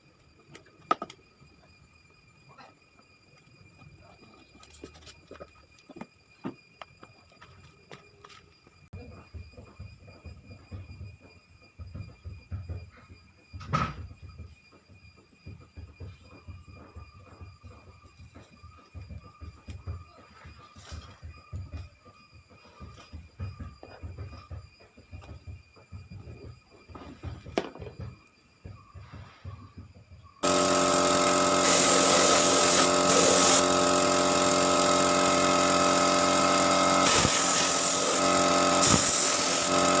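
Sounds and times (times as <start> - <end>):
air compressor running: 30.4 - 40.0
air hissing: 30.4 - 40.0.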